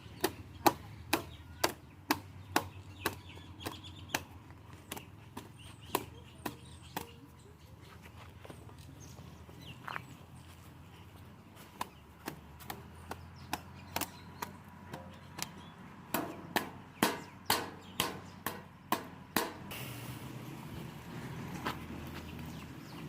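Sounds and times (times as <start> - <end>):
sharp knocks: 16.1 - 19.7.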